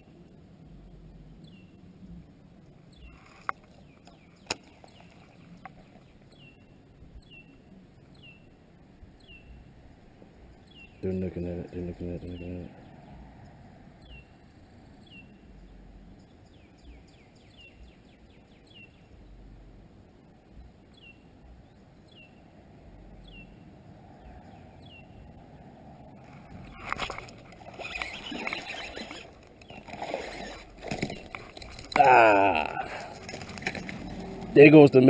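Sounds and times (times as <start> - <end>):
outdoor background noise: 0.0 - 35.0
bird chirping: 1.4 - 1.8, 2.9 - 8.6, 9.2 - 9.7, 10.3 - 13.3, 14.0 - 19.5, 20.5 - 22.5, 23.2 - 23.6, 24.2 - 25.3, 26.6 - 35.0
knocks and rustling in boat: 26.3 - 32.0, 33.1 - 34.6.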